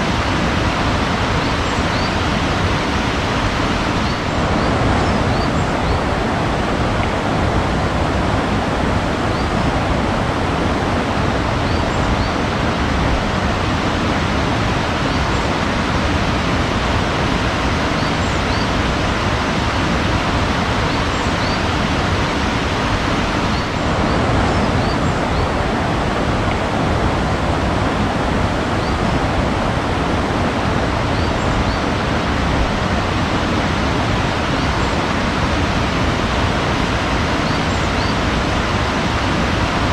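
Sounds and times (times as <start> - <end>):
small birds chirping: 0.0 - 6.1, 17.8 - 19.2, 20.6 - 25.6, 37.2 - 38.6
rushing water: 0.0 - 39.9.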